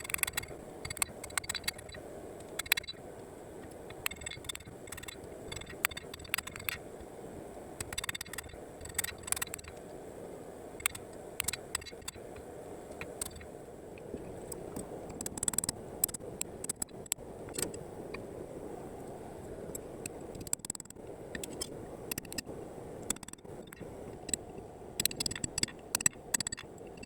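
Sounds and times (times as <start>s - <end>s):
metallic clicks and scrapes: 0.0s - 3.0s, 3.9s - 6.8s, 7.8s - 9.7s, 13.0s - 13.5s, 25.0s - 27.0s
steady low hum: 0.0s - 27.0s.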